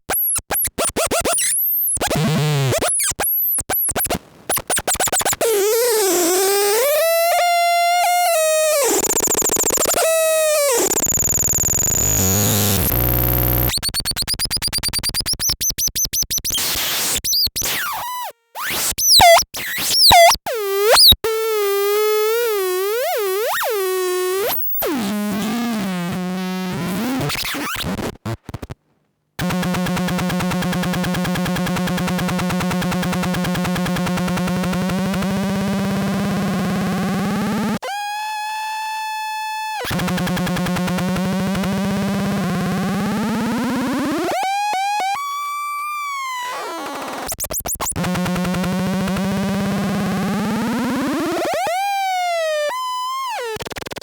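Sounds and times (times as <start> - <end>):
glitchy electronic noise: 0.1 - 7.5, 8.1 - 15.0, 29.4 - 37.8
stuttering electronic clicks: 2.8 - 6.8, 8.7 - 17.8, 29.4 - 37.8.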